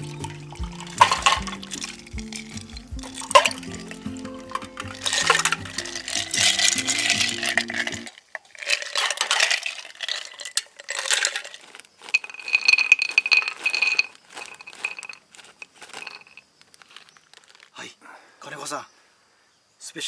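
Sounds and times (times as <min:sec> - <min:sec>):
background music: 0:00.0 - 0:08.1
ice cubes clinking in a glass: 0:00.0 - 0:17.5.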